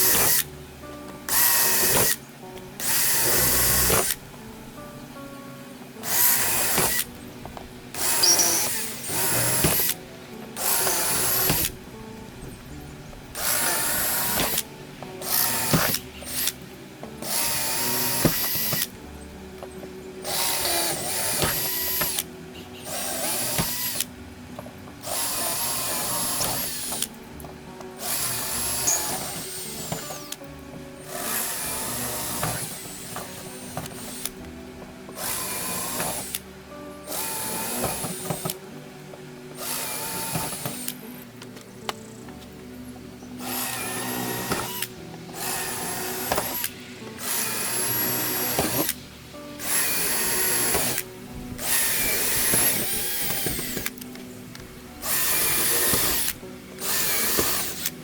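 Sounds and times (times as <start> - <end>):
cordless drill drilling rivets: 0.0 - 0.5, 1.3 - 2.2, 2.8 - 4.3, 6.0 - 7.2, 7.9 - 11.8, 13.3 - 16.6, 17.2 - 19.0, 20.2 - 24.1, 25.0 - 36.4, 37.0 - 38.6, 39.6 - 41.1, 43.4 - 49.0, 49.6 - 58.0
background music: 0.0 - 58.0.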